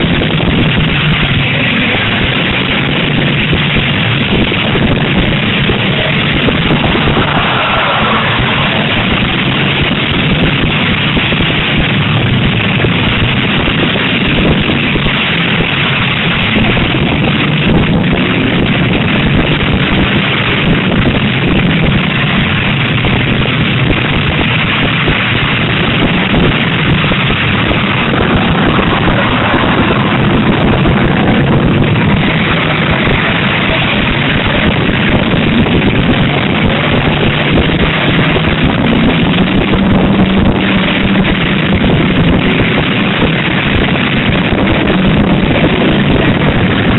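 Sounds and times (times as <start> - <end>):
car engines revving together: 0.0 - 46.9.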